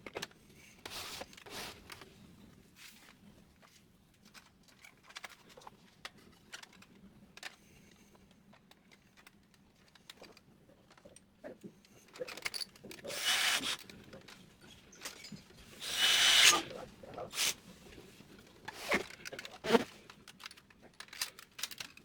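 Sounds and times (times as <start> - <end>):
rough scraping hiss: 13.1 - 13.8, 15.8 - 17.7.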